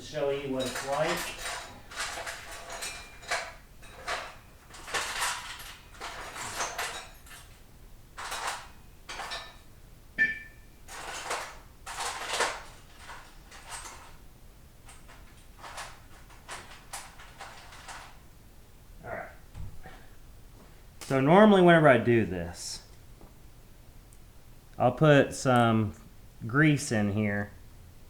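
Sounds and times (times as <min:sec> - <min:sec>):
metal parts scraping and clinking: 0:00.1 - 0:07.6, 0:08.2 - 0:09.6, 0:10.9 - 0:14.2, 0:14.9 - 0:18.2
metallic ping: 0:10.2 - 0:10.7.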